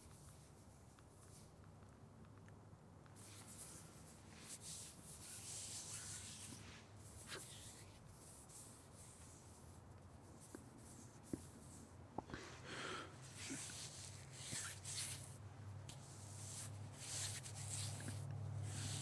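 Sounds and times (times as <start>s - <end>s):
hands rubbing together: 3.2s - 9.7s, 13.2s - 19.0s.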